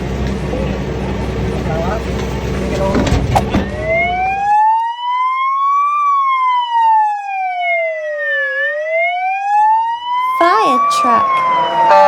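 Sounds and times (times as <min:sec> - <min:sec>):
outdoor background noise: 0:00.0 - 0:12.0
wailing siren: 0:03.8 - 0:12.0.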